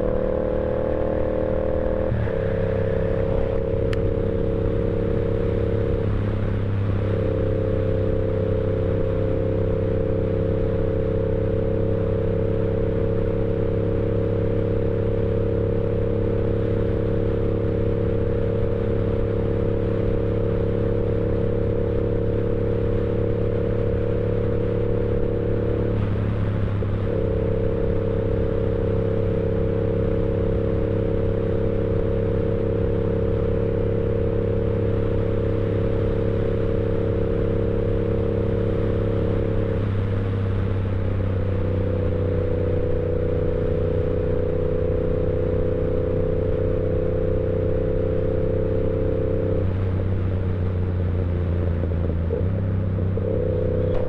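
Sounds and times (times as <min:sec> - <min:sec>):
motorcycle engine cruising: 0:00.0 - 0:54.0.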